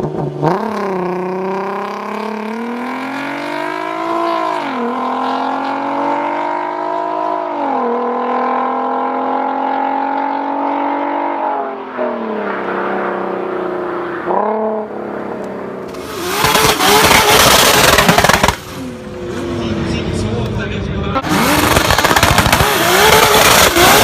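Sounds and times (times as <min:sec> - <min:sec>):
car engine accelerating: 0:00.0 - 0:24.0
loud rushing noise: 0:12.2 - 0:24.0.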